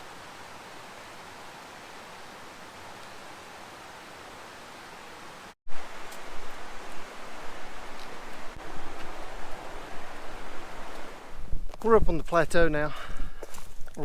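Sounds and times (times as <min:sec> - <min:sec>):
steady rush like a creek: 0:00.0 - 0:14.0
wind rumbling on microphone: 0:05.7 - 0:14.0.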